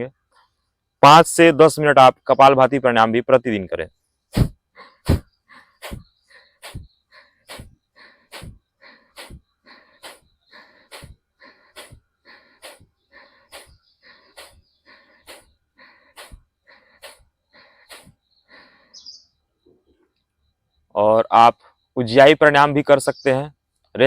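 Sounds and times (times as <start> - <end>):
forceful nasal exhalations: 4.3 - 19.0.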